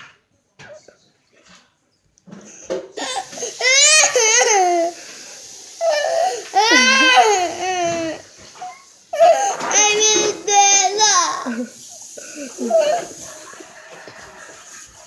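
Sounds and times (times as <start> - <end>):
child wailing: 3.0 - 5.0, 5.8 - 8.2, 9.2 - 11.7, 12.4 - 13.2.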